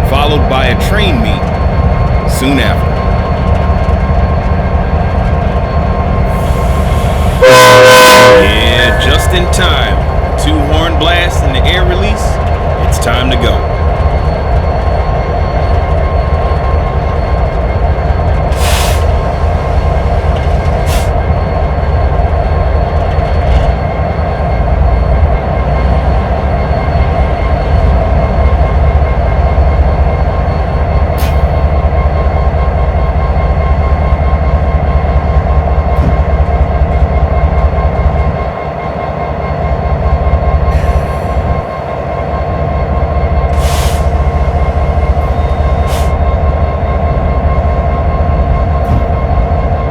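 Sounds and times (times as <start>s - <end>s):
freight train rumbling: 0.0s - 49.9s.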